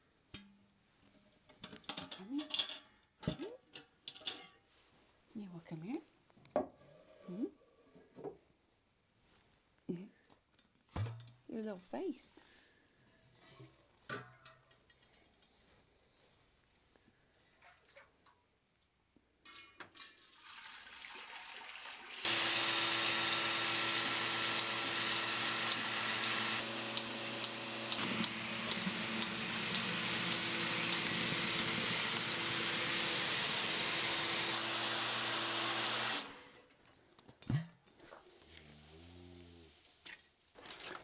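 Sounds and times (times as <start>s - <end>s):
water running from a tap: 20.0s - 36.2s.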